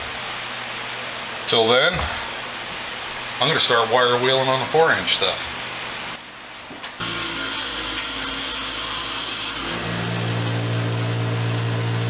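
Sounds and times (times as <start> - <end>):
motor-driven wire wheel humming: 7.0 - 12.0.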